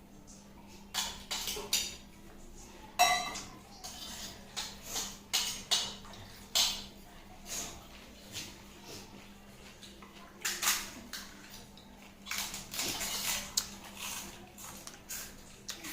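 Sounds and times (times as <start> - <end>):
dishes clinking: 3.0 - 6.9.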